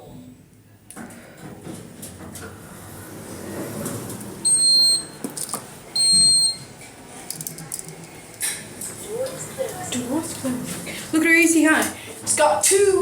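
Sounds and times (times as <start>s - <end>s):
high electronic lift beeps: 4.4s - 5.2s, 6.0s - 6.7s.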